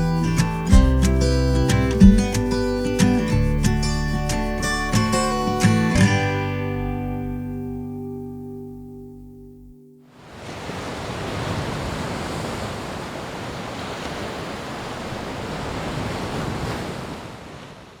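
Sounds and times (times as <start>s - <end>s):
guitar notes: 0.0s - 10.1s
sea surf washing in: 10.1s - 18.0s.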